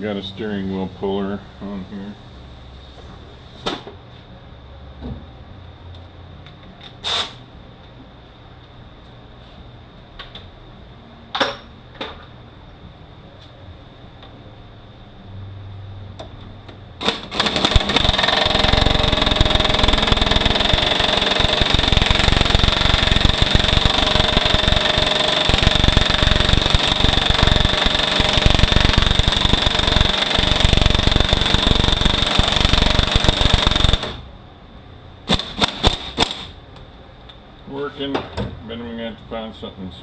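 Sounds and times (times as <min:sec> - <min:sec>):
pneumatic air tool hammering: 0:07.0 - 0:07.4, 0:17.0 - 0:34.2, 0:35.3 - 0:36.6
sharp metallic clicks: 0:17.0 - 0:34.2.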